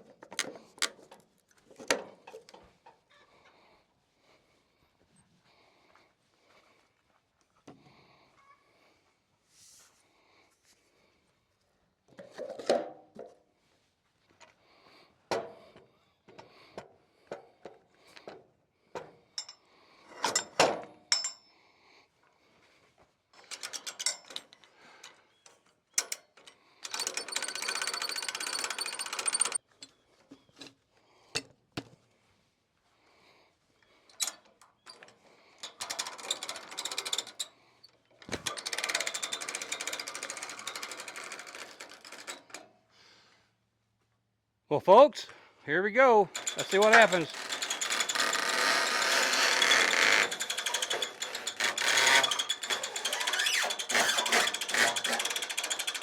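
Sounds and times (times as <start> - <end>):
rapid rattling clicks: 26.8 - 29.6, 38.3 - 42.6, 46.3 - 56.0.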